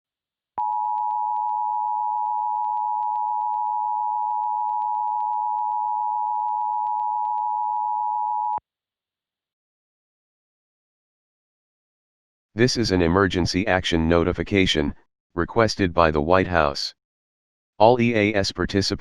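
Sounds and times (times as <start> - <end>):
two-tone alarm: 0.6 - 8.6.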